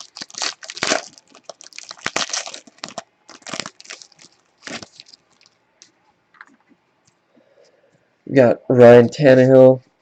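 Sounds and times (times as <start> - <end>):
wrapper crinkling and tearing: 0.0 - 5.6.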